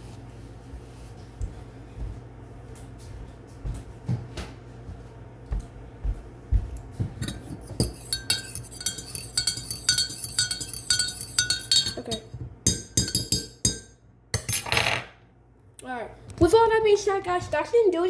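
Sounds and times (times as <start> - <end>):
metal spoon clinking against mug: 7.2 - 14.7.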